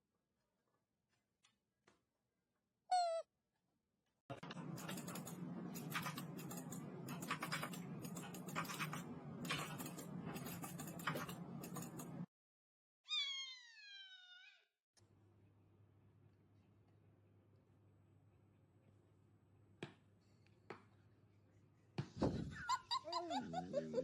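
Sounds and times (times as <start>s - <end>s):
cat meowing: 2.9s - 3.3s, 13.1s - 14.7s.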